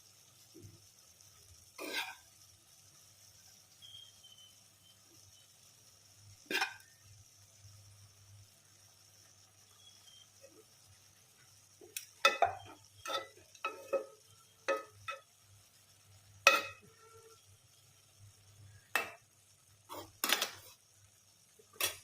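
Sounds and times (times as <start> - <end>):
metal ladle clinking on pot: 16.4 - 17.0.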